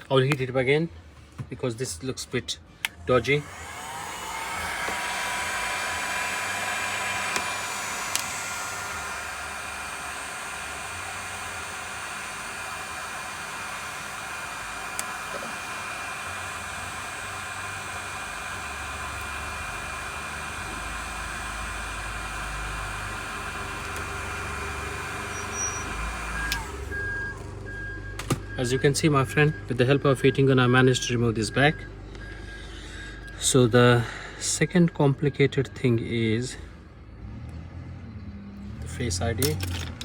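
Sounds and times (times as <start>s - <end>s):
heat gun blowing hot air: 3.2s - 27.4s.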